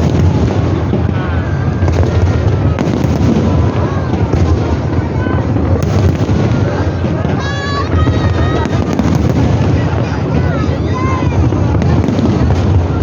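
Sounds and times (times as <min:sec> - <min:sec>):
fireworks booming rumble: 0:00.0 - 0:13.0
sharp firework bangs: 0:00.0 - 0:13.0.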